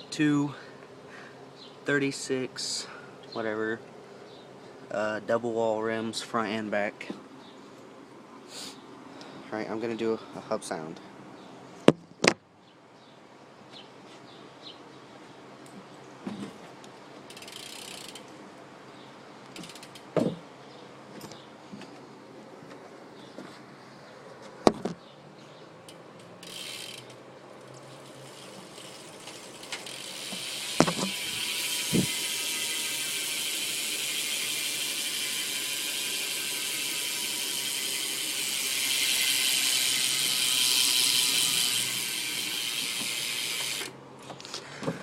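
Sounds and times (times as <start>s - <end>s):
bicycle hub ratcheting buzz: 17.3s - 18.3s, 19.6s - 20.1s, 26.4s - 44.0s
wheel being handled knocks: 29.7s - 32.2s.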